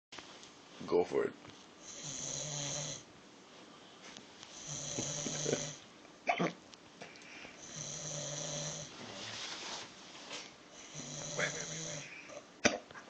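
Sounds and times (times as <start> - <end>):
person snoring: 1.8 - 3.1, 4.5 - 5.8, 7.6 - 8.9, 10.8 - 12.4.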